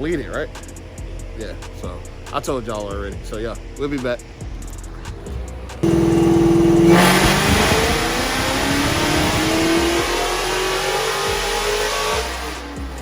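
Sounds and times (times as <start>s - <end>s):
car engine revving at full throttle: 5.8s - 12.7s.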